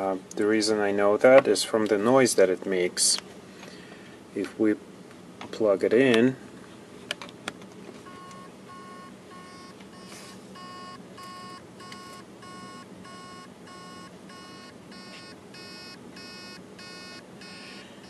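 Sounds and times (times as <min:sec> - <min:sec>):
hard disk motor beeping: 0:08.0 - 0:18.0.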